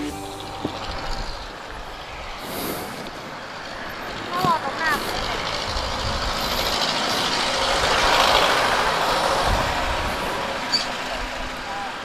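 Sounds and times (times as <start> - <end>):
motorcycle road noise: 0.0 - 12.0
vehicle passing: 0.0 - 12.0
wind rush: 7.4 - 10.6.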